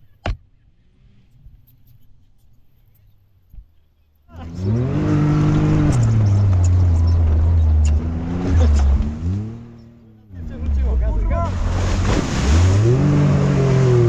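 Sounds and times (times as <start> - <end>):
engine revving: 4.4 - 14.0
loud rushing noise: 11.5 - 13.2.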